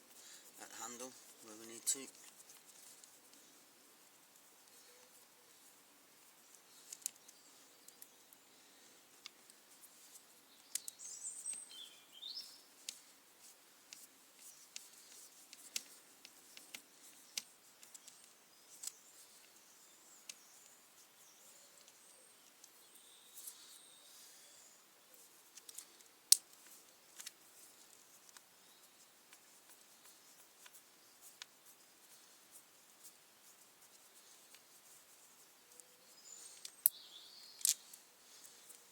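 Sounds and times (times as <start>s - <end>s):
light clicks of hand tools: 6.8s - 8.1s, 37.6s - 38.0s
bird chirps: 10.5s - 12.7s, 35.8s - 37.9s.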